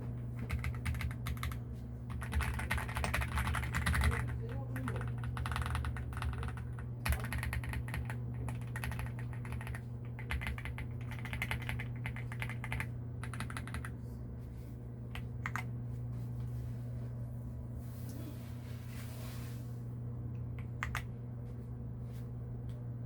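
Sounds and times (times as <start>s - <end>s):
mechanical keyboard typing: 0.4s - 13.9s, 15.1s - 15.7s, 20.8s - 21.1s.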